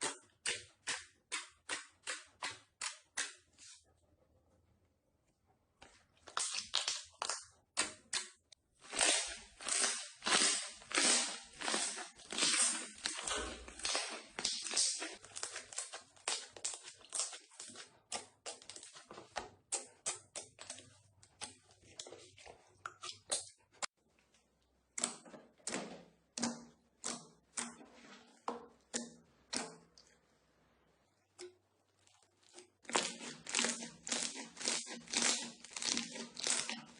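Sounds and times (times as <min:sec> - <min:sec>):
slime squishing and popping: 0:08.9 - 0:19.0.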